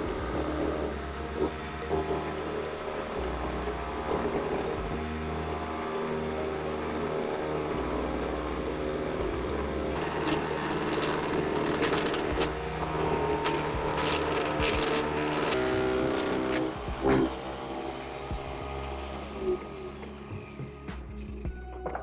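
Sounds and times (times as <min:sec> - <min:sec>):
motor humming: 0:00.0 - 0:21.5
sharp clicks and scrapes: 0:08.1 - 0:17.6.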